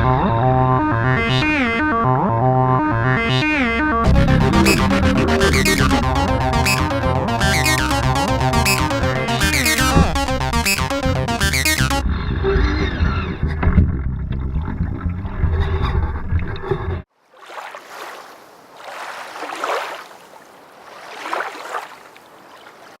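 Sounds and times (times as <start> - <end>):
water rushing along boat hull: 17.2 - 23.0
water swishing: 17.2 - 23.0.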